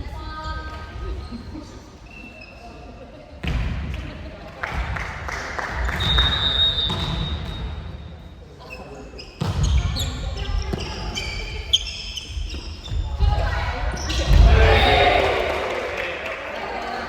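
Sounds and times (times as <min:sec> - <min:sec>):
shoes squeaking on court floor: 0:00.4 - 0:03.1, 0:05.8 - 0:14.7.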